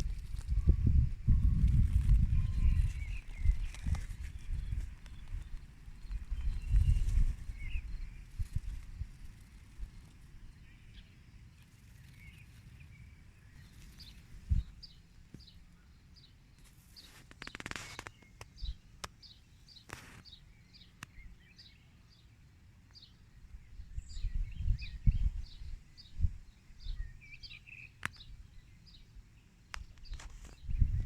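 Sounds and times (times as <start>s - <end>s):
songbird singing high note: 0.5s - 4.8s.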